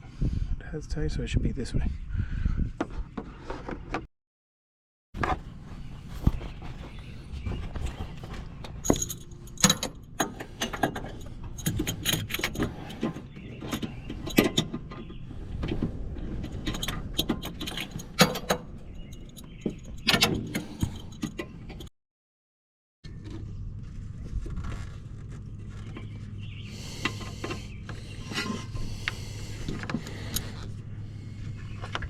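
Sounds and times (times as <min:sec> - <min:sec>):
metal tools clinking and scraping: 0:07.8 - 0:15.2, 0:16.2 - 0:21.9.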